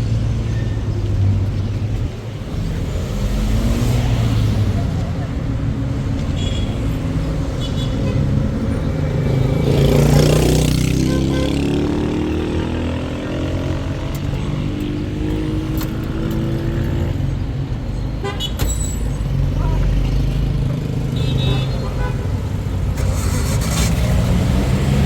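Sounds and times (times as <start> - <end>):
vehicle passing by: 2.4 - 6.0, 8.2 - 17.5, 22.5 - 25.0
engine pulling away: 22.6 - 25.0.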